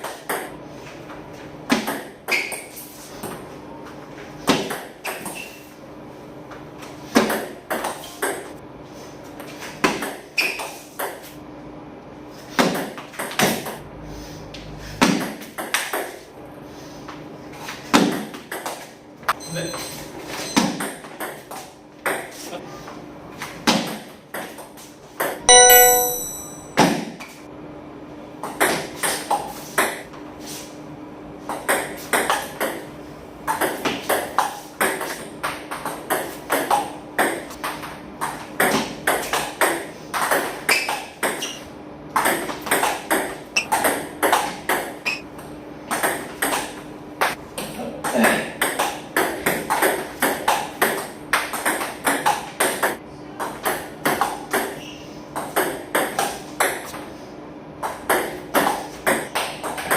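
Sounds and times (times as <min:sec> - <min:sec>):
bell-like chime: 0:25.5 - 0:26.8
table tennis ball hits: 0:25.5 - 0:26.9.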